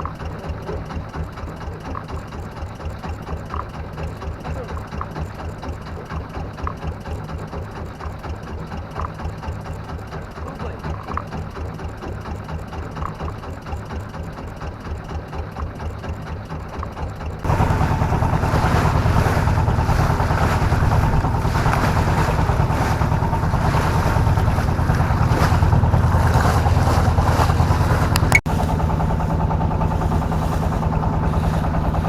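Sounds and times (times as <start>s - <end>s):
boat engine pulsing hum: 0.0s - 32.0s
water noise: 0.0s - 32.0s
wind: 14.2s - 32.0s.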